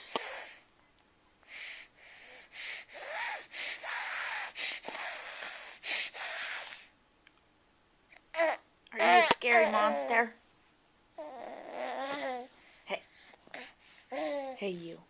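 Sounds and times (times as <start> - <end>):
child sniffling and snorting: 0.0 - 0.7, 1.5 - 6.9.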